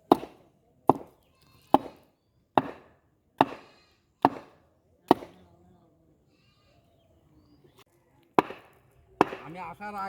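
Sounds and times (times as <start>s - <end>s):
axe chopping wood: 0.0s - 5.4s, 8.4s - 9.6s.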